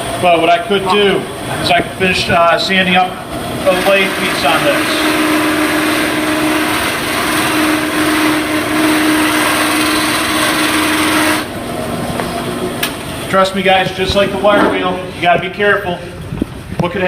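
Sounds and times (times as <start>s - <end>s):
drum sander motor hum: 3.1s - 13.3s
wood sanding rasping hiss: 3.7s - 11.5s.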